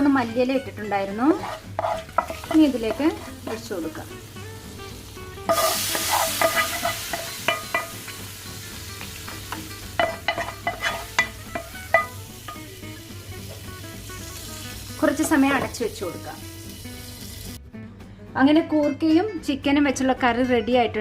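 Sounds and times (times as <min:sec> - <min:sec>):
hot oil sizzling: 0:00.0 - 0:17.6
spoon scraping a pan: 0:01.1 - 0:03.7, 0:05.5 - 0:08.2, 0:09.5 - 0:12.6.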